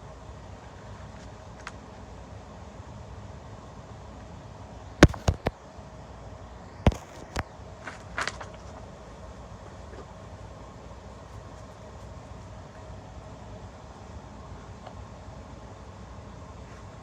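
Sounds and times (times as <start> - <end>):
cards tapping and clicking: 5.0 - 5.5, 6.9 - 7.4.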